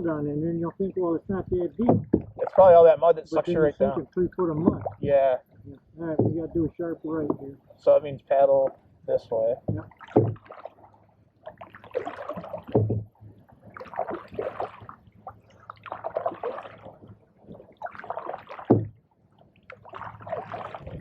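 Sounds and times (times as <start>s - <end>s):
paddle knocking against hull: 1.5s - 2.9s, 3.8s - 7.6s, 9.5s - 19.0s, 19.7s - 21.0s
paddles splashing through water: 1.6s - 21.0s.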